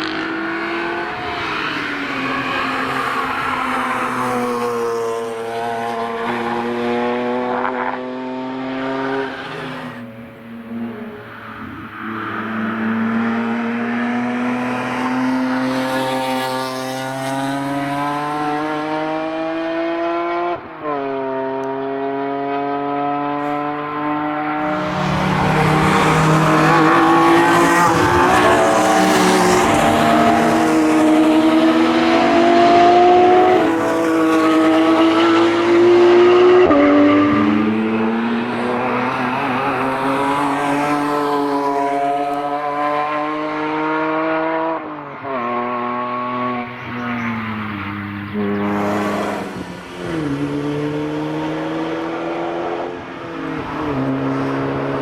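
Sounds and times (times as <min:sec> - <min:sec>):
car engines accelerating at full throttle: 0:00.0 - 0:55.0.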